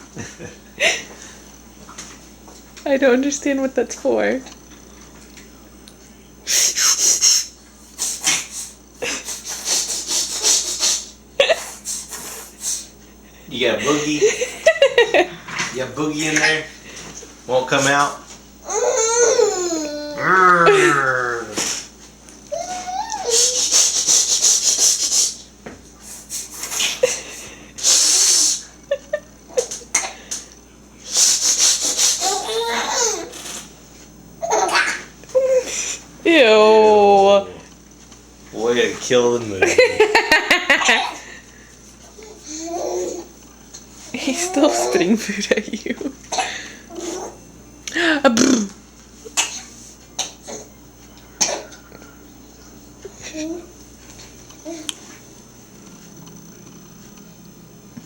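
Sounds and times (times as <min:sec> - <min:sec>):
baby blowing raspberries: 0:06.5 - 0:12.9, 0:23.1 - 0:27.2, 0:27.8 - 0:28.7, 0:31.0 - 0:33.8
baby babbling: 0:32.2 - 0:33.3
baby laughing: 0:32.2 - 0:33.6, 0:34.4 - 0:35.7, 0:40.0 - 0:41.2.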